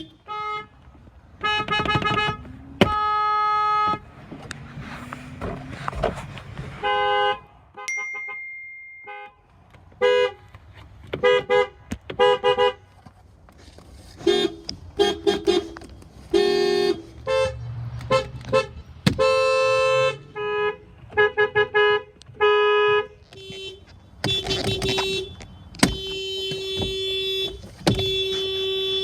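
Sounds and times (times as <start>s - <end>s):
vehicle horns honking: 0.0s - 4.2s, 6.7s - 10.5s, 11.1s - 12.9s, 14.2s - 29.0s.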